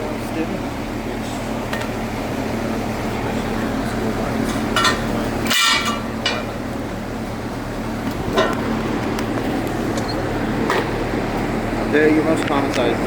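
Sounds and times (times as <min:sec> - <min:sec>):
tools clinking on metal rim: 0:04.7 - 0:06.6.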